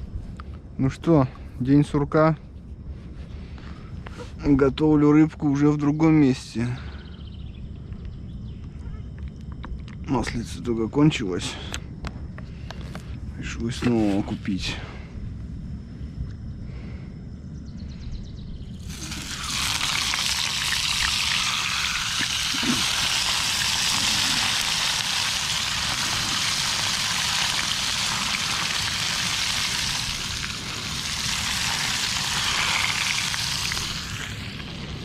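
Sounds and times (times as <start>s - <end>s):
fish frying in hot oil: 18.8s - 35.0s.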